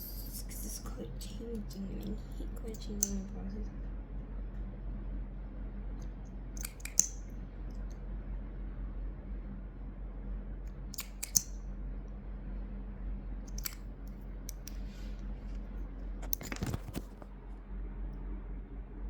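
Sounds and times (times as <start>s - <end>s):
steady low hum: 0.0s - 19.0s
small clicks: 2.7s - 3.3s, 6.0s - 7.2s, 10.9s - 11.6s, 13.5s - 14.8s.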